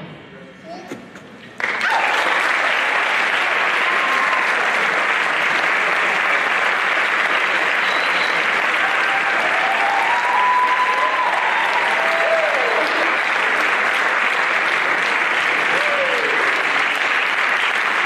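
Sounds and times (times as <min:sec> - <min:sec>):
audience applauding: 0:01.6 - 0:18.0
people whooping: 0:01.7 - 0:02.5, 0:03.6 - 0:04.8, 0:07.7 - 0:13.2, 0:15.6 - 0:16.7.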